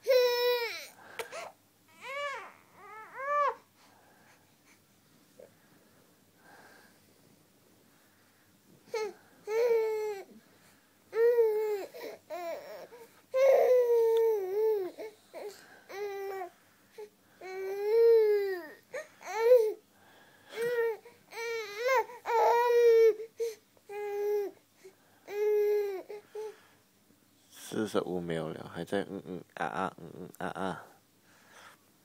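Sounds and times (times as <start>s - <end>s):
baby crying: 0.0s - 3.7s, 8.9s - 10.4s, 11.1s - 16.5s, 17.4s - 19.8s, 20.6s - 24.6s.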